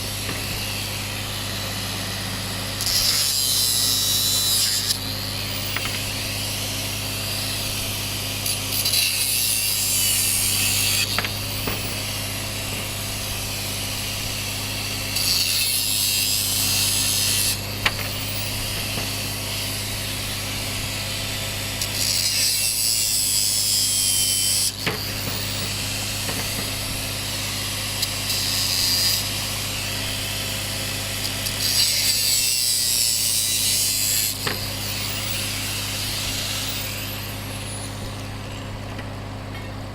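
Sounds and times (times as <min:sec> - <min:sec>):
steady low hum: 0:00.0 - 0:22.1
angle grinder cutting metal pipe: 0:00.0 - 0:39.9.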